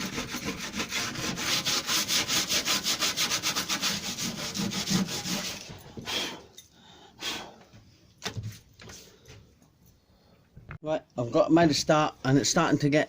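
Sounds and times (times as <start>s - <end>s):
sandpaper rubbing on filler: 0.0s - 5.7s.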